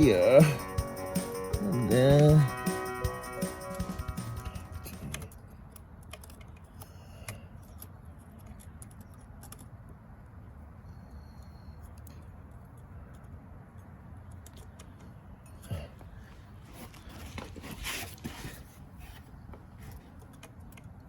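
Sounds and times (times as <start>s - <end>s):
small metal parts clicking: 5.0s - 6.9s.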